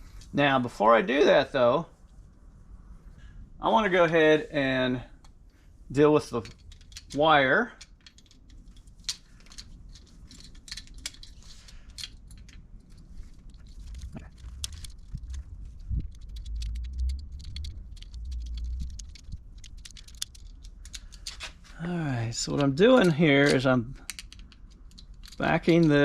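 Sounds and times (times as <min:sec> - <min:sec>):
clicks and taps of handling wire: 0:06.4 - 0:07.2, 0:07.8 - 0:12.6, 0:22.5 - 0:25.9.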